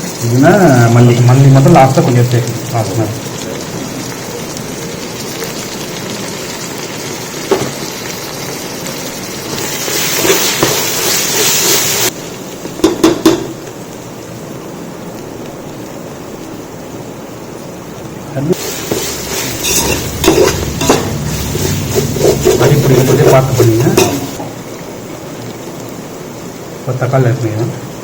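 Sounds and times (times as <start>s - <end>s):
food sizzling in oil: 0.0s - 28.0s
spoon knocking against pot: 12.8s - 13.5s.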